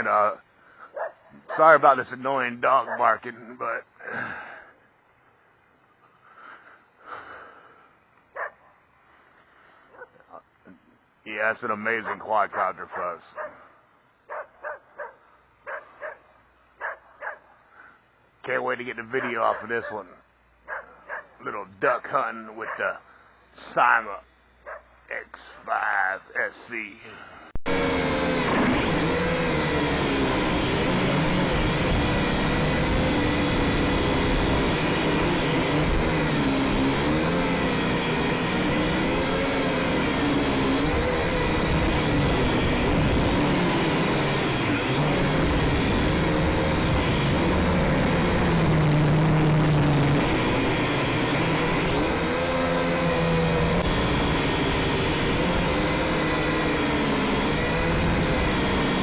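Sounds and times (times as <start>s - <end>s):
drone propellers whirring: 27.6s - 59.0s.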